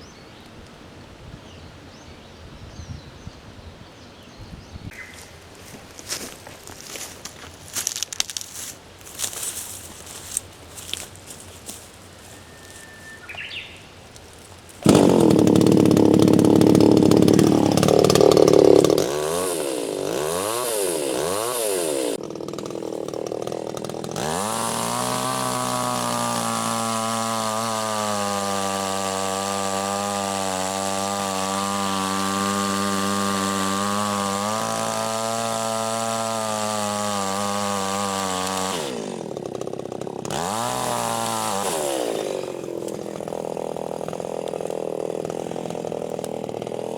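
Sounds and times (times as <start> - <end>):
chainsaw revving: 14.7 - 46.9.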